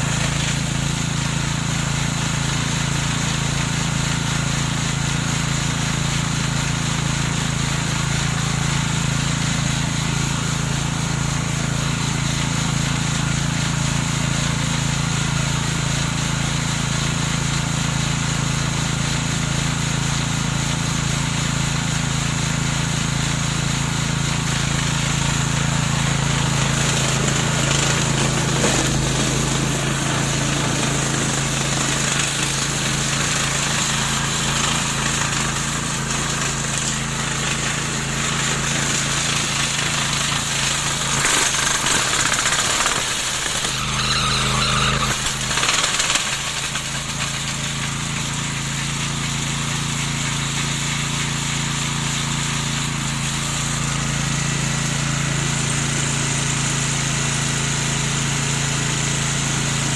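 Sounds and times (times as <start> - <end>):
lawn mower humming: 0.0 - 59.9.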